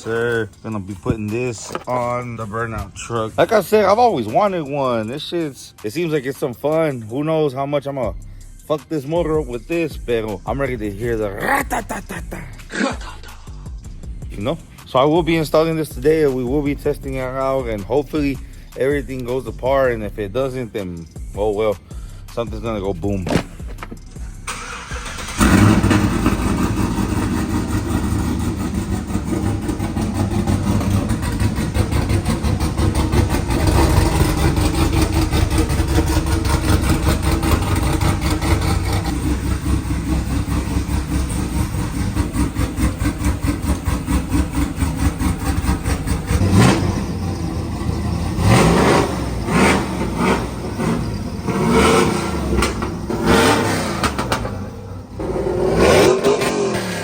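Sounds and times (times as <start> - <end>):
truck engine starting and idling: 0.0 - 57.0
engine revving in throttle blips: 8.1 - 57.0.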